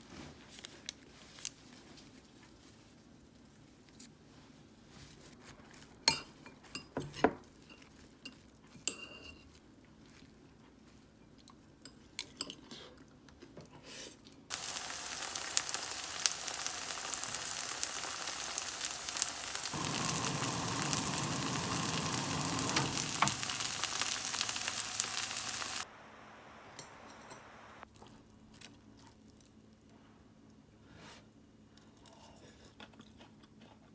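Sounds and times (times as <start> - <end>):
food sizzling in a frying pan: 14.5 - 27.8.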